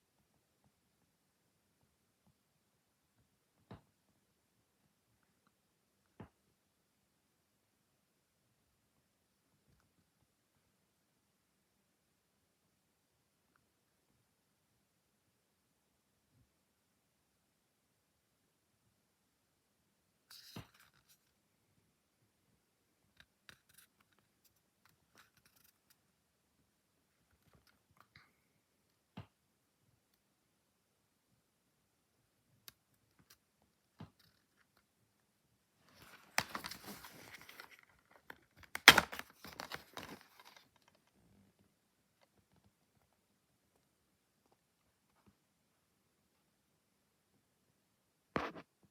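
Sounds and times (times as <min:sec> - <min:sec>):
plastic packaging crinkling: 0:36.0 - 0:40.7
plastic case clicking: 0:38.6 - 0:40.2.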